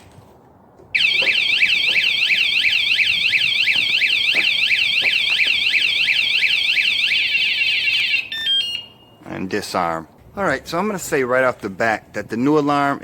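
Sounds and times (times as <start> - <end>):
bike alarm siren warbling: 1.0 - 9.2.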